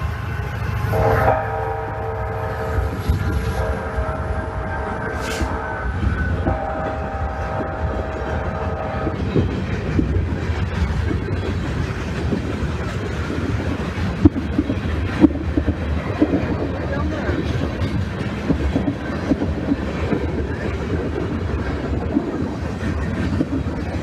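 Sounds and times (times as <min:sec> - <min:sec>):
train wheels rumbling on rail: 0:00.0 - 0:24.0
train horn chord: 0:00.8 - 0:02.9, 0:03.5 - 0:09.2.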